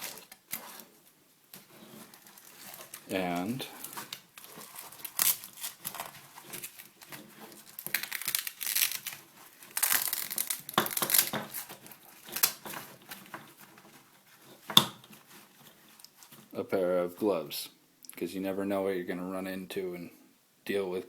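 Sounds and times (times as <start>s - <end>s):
gear crinkling and rustling: 0.0s - 16.6s.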